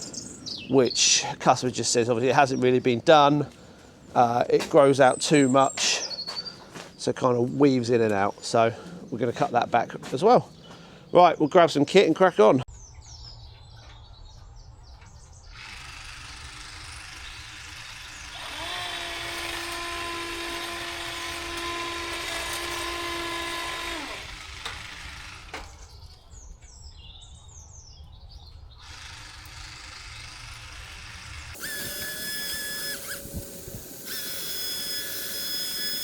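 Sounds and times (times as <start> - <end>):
birds chirping: 0.0 - 22.1
hedge trimmer motor running: 15.5 - 26.2, 28.8 - 36.0.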